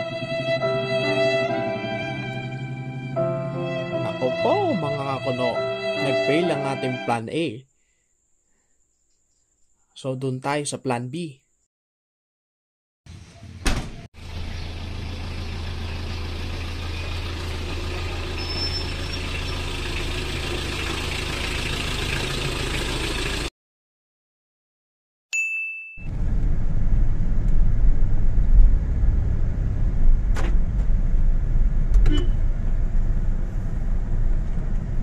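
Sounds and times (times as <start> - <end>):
vehicle engine hum: 0.0 - 6.0, 14.2 - 23.5, 26.1 - 35.0
vehicle rumbling on the move: 13.1 - 23.5, 26.1 - 35.0
short beep: 32.0 - 32.4.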